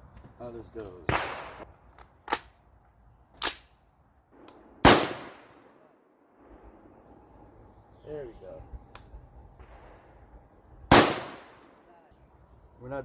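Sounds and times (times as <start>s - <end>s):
rifle shots: 1.1s - 1.7s, 4.4s - 6.8s, 10.9s - 11.8s.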